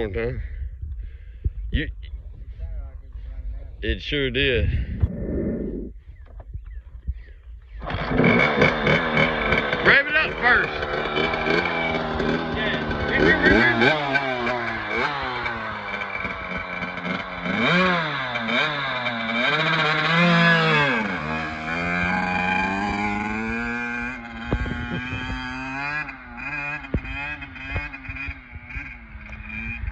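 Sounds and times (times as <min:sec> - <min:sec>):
dirt bike engine revving: 0:04.7 - 0:06.0, 0:07.7 - 0:29.9.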